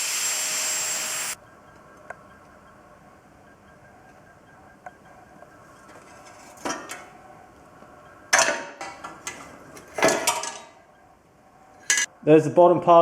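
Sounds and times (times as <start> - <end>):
steel pieces clanking together: 10.0 - 10.8.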